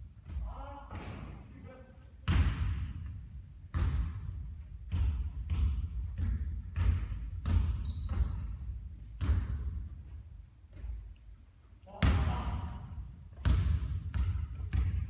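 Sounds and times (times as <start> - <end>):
basketball bouncing on a court: 2.2 - 11.1, 11.8 - 15.0.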